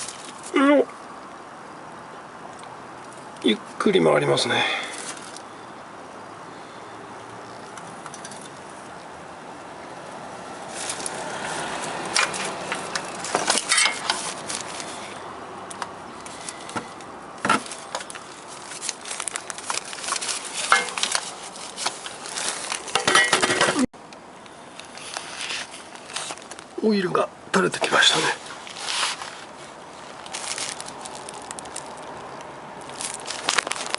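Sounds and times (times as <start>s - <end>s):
oil filter wrench clicking and scraping: 12.1s - 14.3s.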